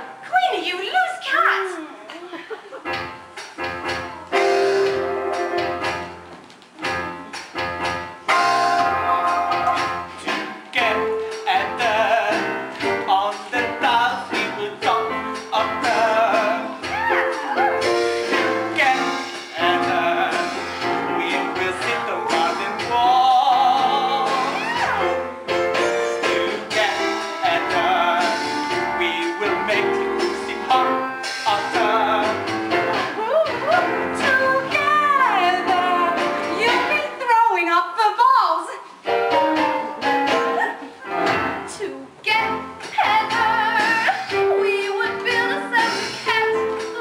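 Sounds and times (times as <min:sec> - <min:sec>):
band accompaniment: 0:02.8 - 0:37.5, 0:38.8 - 0:47.0
person singing with vibrato: 0:09.8 - 0:37.2, 0:40.3 - 0:47.0.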